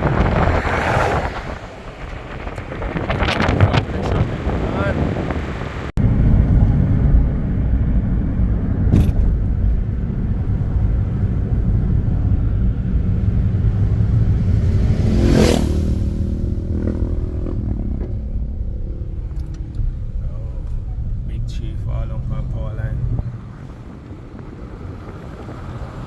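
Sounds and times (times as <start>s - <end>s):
car engine and tyre rumble: 0.0s - 26.0s
short rushing swell: 12.4s - 21.9s.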